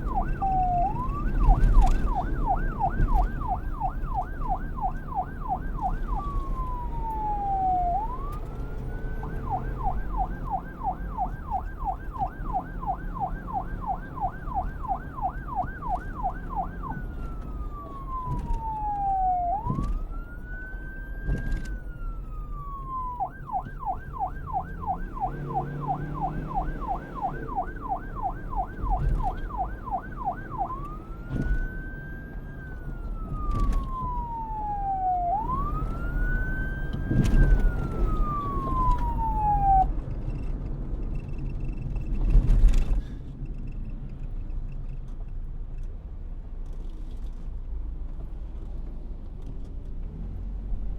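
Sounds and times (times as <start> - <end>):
police siren wailing and yelping: 0.0 - 40.0
vehicle rumble: 0.0 - 50.9.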